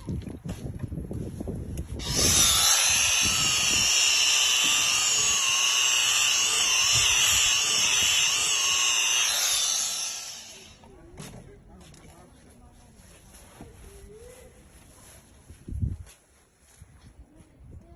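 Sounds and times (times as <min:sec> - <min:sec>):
electric polisher whining on glass: 0:02.0 - 0:10.8.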